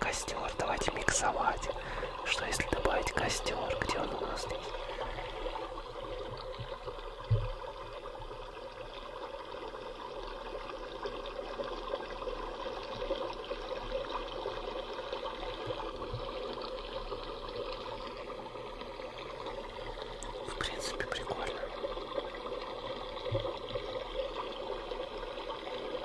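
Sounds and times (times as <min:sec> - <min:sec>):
water trickling: 0:00.0 - 0:26.0.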